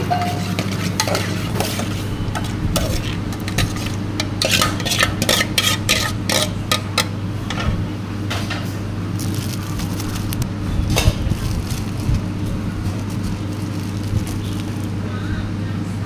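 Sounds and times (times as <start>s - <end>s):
utensil clinking against dish: 0.0s - 7.6s
steady low hum: 0.0s - 16.0s.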